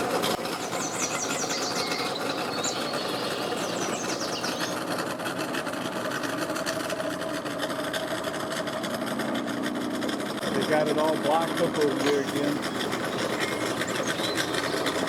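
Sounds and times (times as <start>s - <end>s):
boat engine idling: 0.0s - 15.0s
broad rushing noise: 12.0s - 15.0s.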